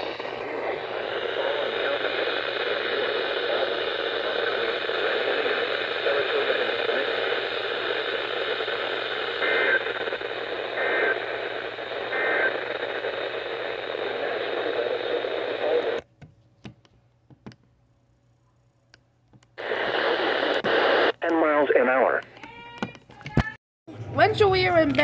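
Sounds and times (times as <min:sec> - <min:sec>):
radio static hiss: 0:00.0 - 0:16.0, 0:19.6 - 0:22.3.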